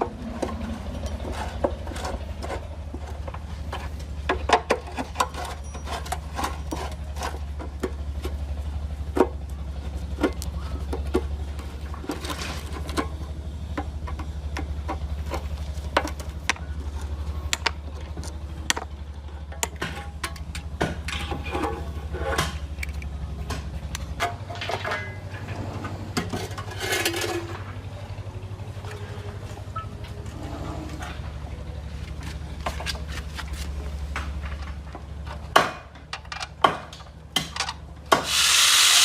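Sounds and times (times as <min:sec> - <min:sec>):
low mechanical hum: 0:00.0 - 0:39.0
metal clicks and knocks: 0:34.1 - 0:37.8.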